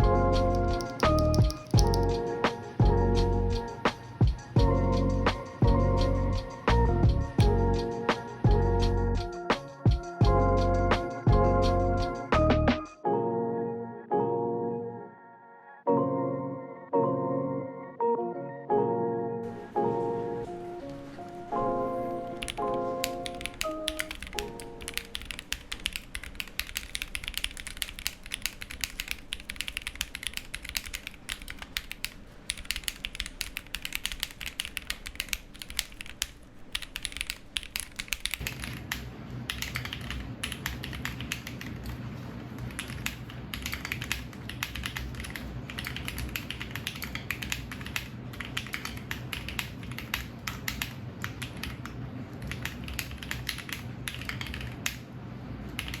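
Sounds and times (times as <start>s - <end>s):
mechanical keyboard typing: 0.0s - 2.8s, 22.4s - 55.0s, 55.7s - 56.0s.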